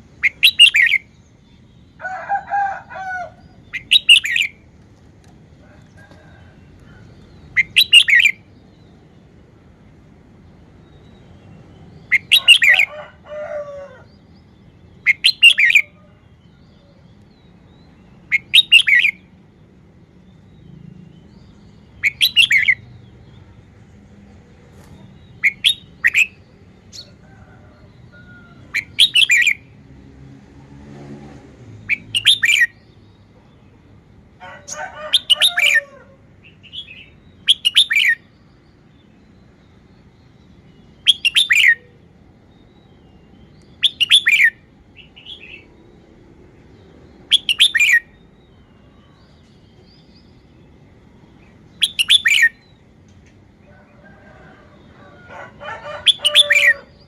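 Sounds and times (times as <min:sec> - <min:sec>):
bulbul singing warbled phrases: 0:00.0 - 0:02.0, 0:03.2 - 0:04.6, 0:07.0 - 0:09.4, 0:10.6 - 0:13.2, 0:14.0 - 0:23.8, 0:25.0 - 0:27.2, 0:31.8 - 0:53.6, 0:55.4 - 0:57.0.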